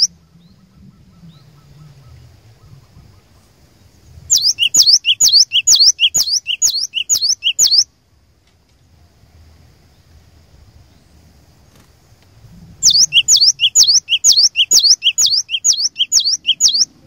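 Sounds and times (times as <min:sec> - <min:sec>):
bird singing two-note whistles: 0:04.3 - 0:07.8, 0:12.8 - 0:16.9.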